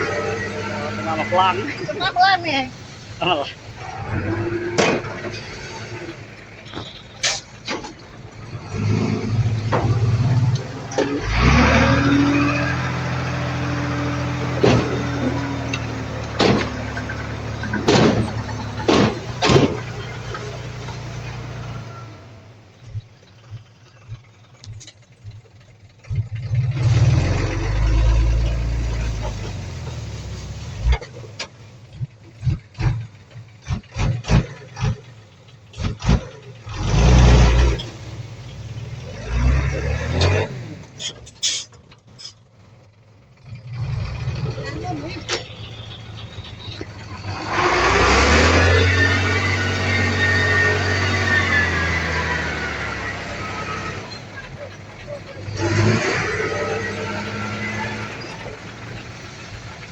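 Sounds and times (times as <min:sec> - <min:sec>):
heavy diesel engine running: 0:00.0 - 0:59.9
sharp clanks and knocks: 0:04.6 - 0:05.6, 0:06.6 - 0:08.4, 0:09.2 - 0:11.4, 0:14.4 - 0:21.1.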